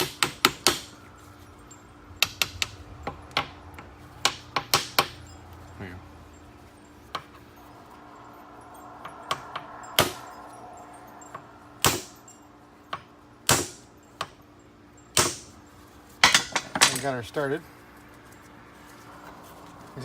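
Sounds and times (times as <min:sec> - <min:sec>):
hammer striking steel: 0:02.2 - 0:05.4, 0:09.0 - 0:10.6, 0:11.2 - 0:14.4, 0:15.1 - 0:15.6, 0:16.2 - 0:17.0.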